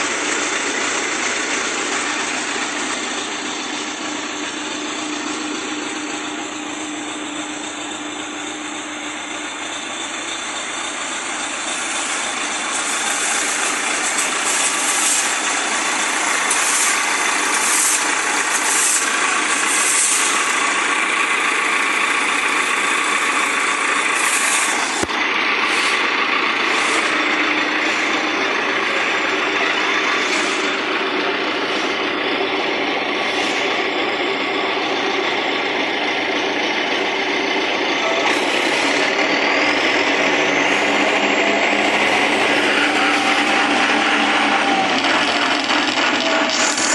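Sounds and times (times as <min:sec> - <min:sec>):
tractor engine running: 0:00.0 - 0:46.9.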